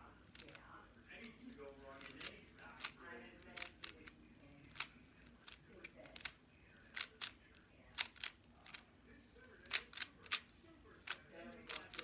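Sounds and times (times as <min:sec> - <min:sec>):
plastic puzzle cube clicks: 0:02.0 - 0:08.8, 0:09.6 - 0:10.5, 0:11.1 - 0:12.0.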